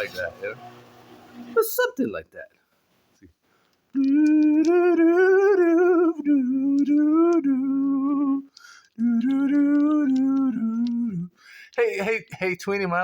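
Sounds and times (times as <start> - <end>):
man humming: 4.0 - 11.4.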